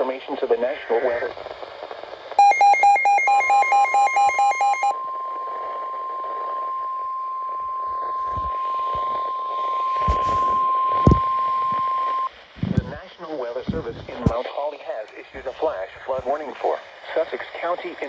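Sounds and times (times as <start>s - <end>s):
faint radio static: 0.0s - 18.0s
fast electronic alert beeping: 2.4s - 5.0s
steady warning alarm tone: 2.4s - 12.3s.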